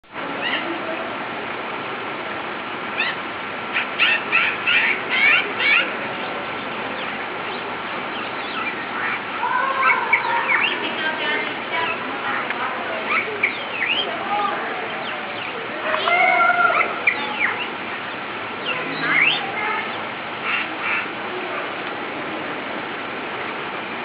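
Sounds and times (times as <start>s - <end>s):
steady background noise: 0.0s - 24.0s
bird chirps: 3.8s - 9.2s, 13.0s - 14.2s, 16.7s - 21.1s.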